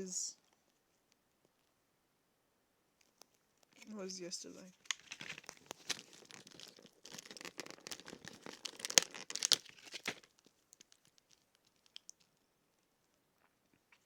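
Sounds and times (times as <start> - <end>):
packaging torn and crinkled: 4.7 - 12.3.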